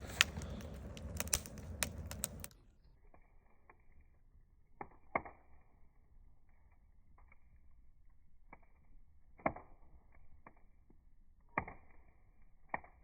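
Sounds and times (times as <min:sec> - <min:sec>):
sharp pops of fire: 0:00.0 - 0:02.6, 0:09.3 - 0:10.2, 0:11.5 - 0:13.0
wood fire crackling: 0:00.0 - 0:05.3.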